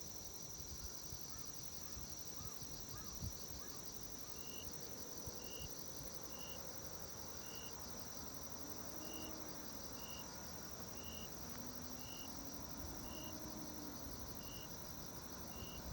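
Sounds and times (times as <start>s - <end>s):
insects trilling: 1.2s - 15.9s.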